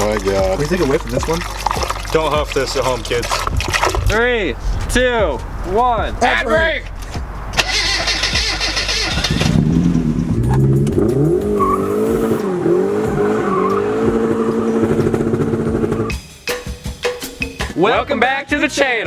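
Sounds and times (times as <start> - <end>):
car engine revving: 4.3 - 16.1.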